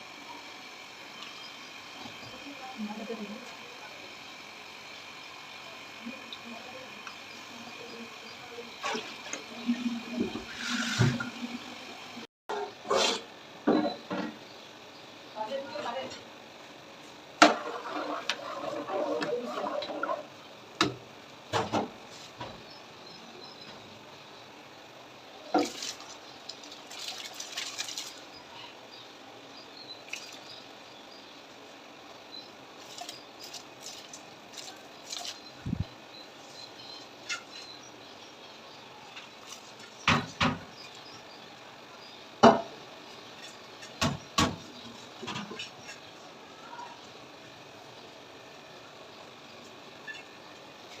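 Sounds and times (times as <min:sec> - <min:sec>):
scraping and rustling: 0:17.5 - 0:20.3.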